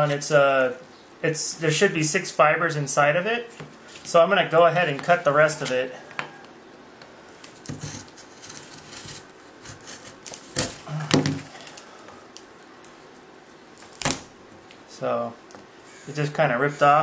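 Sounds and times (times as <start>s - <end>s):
plastic snapping: 13.8s - 14.8s.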